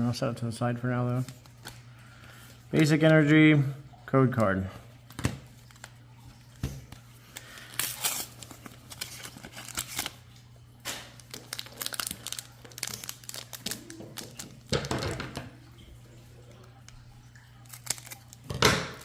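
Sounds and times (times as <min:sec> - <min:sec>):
foil wrappers crinkling and tearing: 0:01.1 - 0:01.8, 0:05.0 - 0:14.9, 0:16.6 - 0:19.0.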